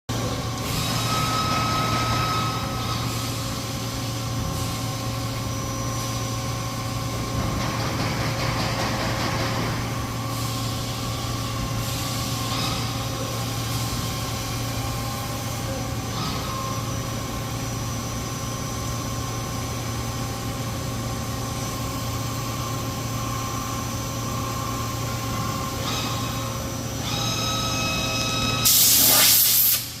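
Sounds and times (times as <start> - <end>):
machine whining tones: 0.1 - 30.0
loud hiss: 28.6 - 30.0.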